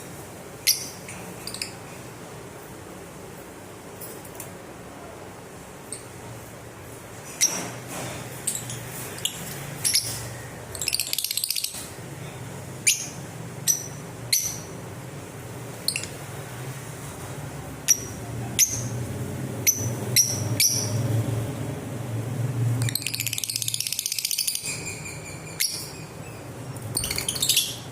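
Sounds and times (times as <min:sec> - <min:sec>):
steady low hum: 0:00.0 - 0:27.9
lovebirds chirping: 0:00.6 - 0:01.9, 0:08.5 - 0:14.9, 0:15.7 - 0:16.4, 0:17.8 - 0:19.0, 0:19.6 - 0:21.1, 0:22.8 - 0:27.9
rapid bird chattering: 0:08.6 - 0:12.0, 0:22.8 - 0:27.9.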